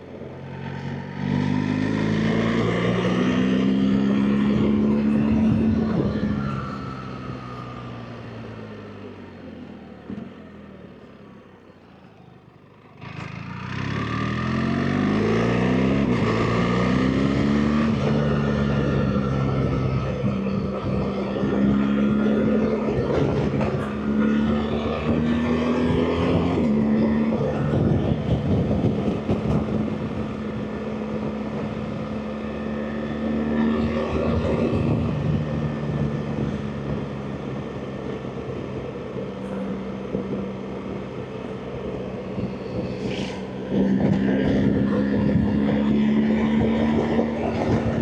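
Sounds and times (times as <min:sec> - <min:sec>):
road noise: 0:00.0 - 0:48.0
wind noise: 0:25.9 - 0:32.3.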